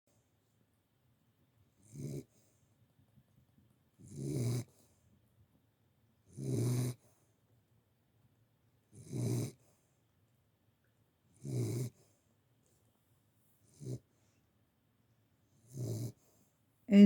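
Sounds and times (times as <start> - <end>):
dog snoring: 1.8 - 2.5, 4.0 - 4.9, 6.2 - 7.1, 8.9 - 9.7, 11.3 - 12.2, 13.6 - 14.1, 15.6 - 16.3.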